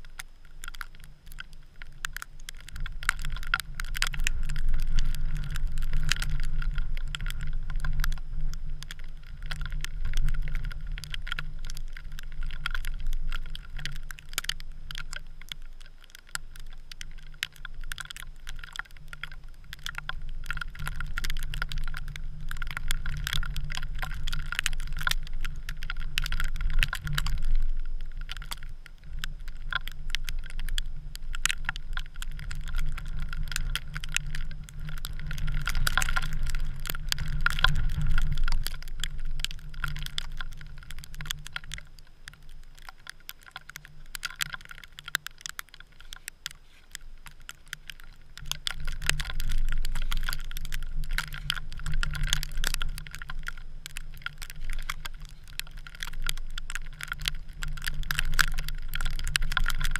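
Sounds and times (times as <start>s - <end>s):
patter of small ticks: 0.0s - 59.9s.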